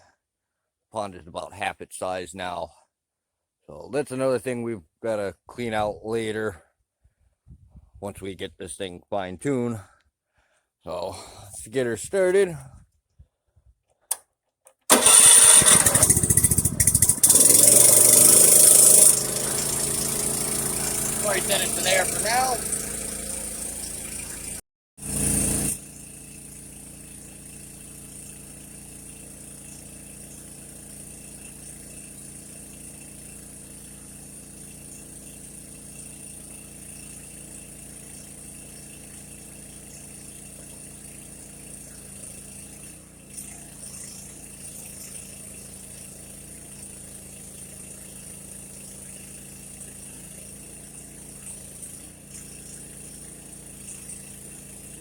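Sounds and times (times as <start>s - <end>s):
loud engine burst: 14.9s - 23.7s
small engine idling: 14.9s - 55.0s.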